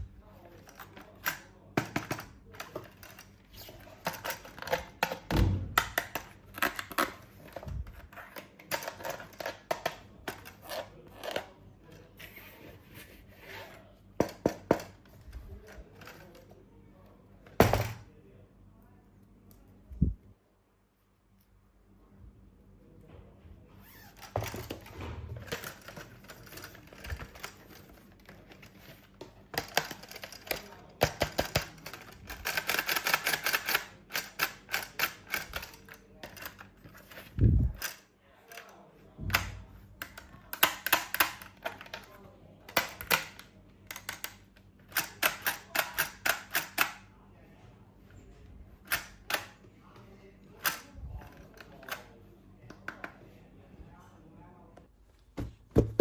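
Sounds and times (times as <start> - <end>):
plastic clicks and rattles: 24.2 - 38.7.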